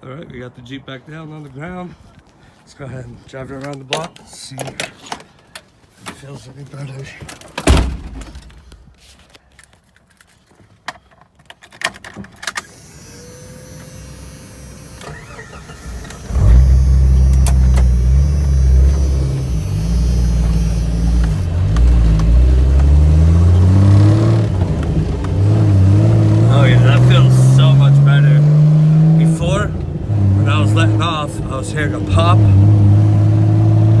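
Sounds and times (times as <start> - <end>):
car engine cranking and running: 12.5 - 34.0.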